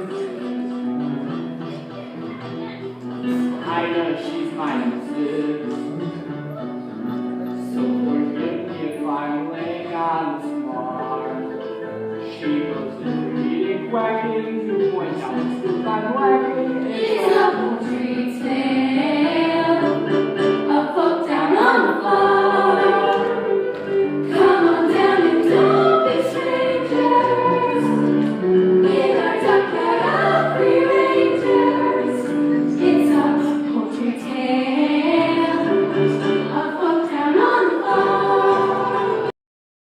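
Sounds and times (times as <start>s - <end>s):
choir singing a show tune: 12.3s - 39.3s.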